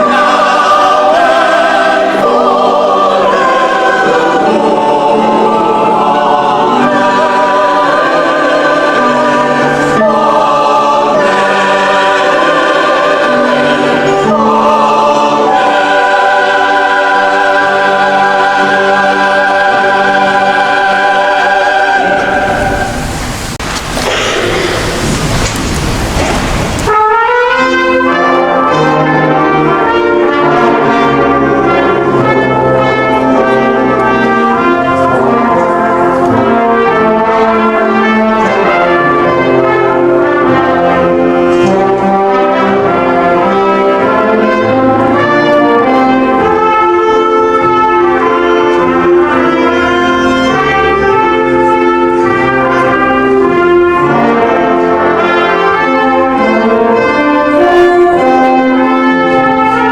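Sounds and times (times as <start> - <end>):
brass ensemble playing: 0.0 - 59.9.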